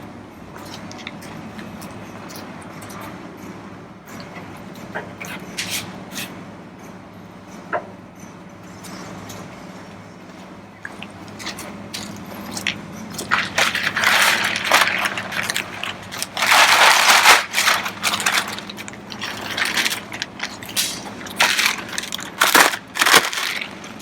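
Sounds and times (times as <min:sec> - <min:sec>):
packaging crinkling and rustling: 0:11.3 - 0:24.0.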